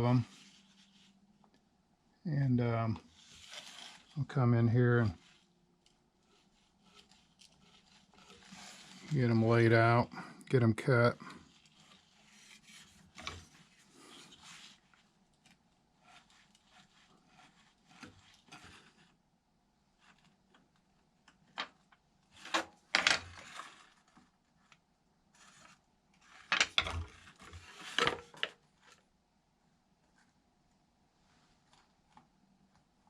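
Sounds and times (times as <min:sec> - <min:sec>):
rubbing and scraping: 0:03.0 - 0:19.2.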